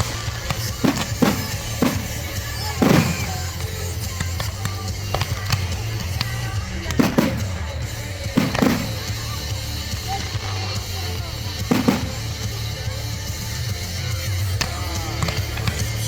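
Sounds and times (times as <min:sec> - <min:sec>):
crackling firework pops: 0:00.0 - 0:13.4, 0:14.2 - 0:16.0
heavy firework booms: 0:00.0 - 0:16.0.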